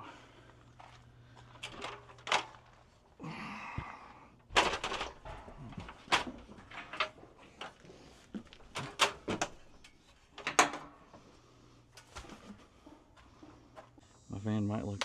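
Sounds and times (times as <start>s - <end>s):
ladder and tools clanking: 0.7s - 3.0s, 4.5s - 11.2s.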